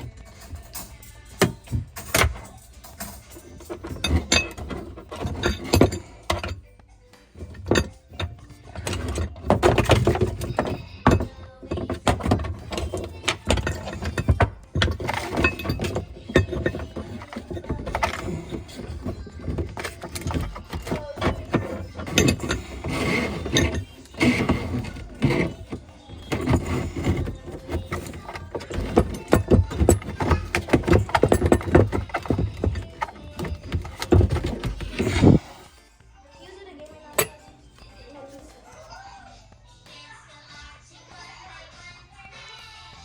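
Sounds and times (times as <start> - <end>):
knocks thunks and clinks: 0.0 - 35.5
background music: 0.0 - 43.0.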